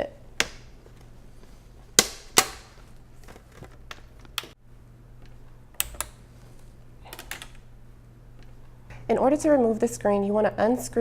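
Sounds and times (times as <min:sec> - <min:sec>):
plastic clips snapping loose: 0:00.4 - 0:00.7, 0:02.0 - 0:04.6, 0:05.7 - 0:06.2.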